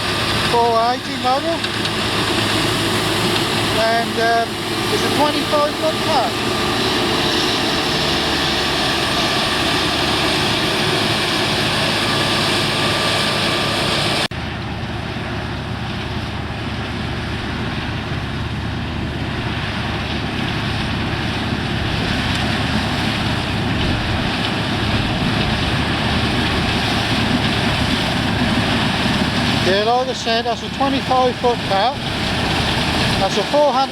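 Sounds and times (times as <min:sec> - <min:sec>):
combine harvester drone: 0:00.0 - 0:33.9.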